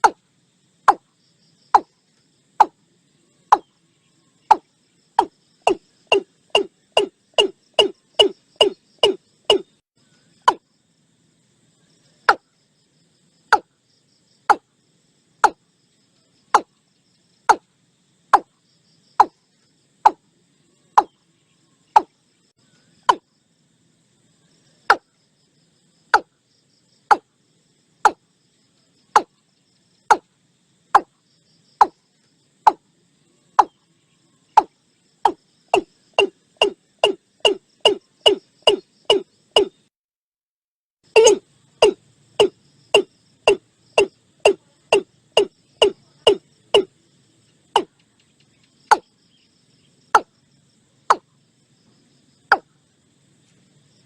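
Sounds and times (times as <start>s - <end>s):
bird calling sharp notes: 4.5s - 9.7s, 35.8s - 39.8s, 41.2s - 44.1s, 44.9s - 46.9s.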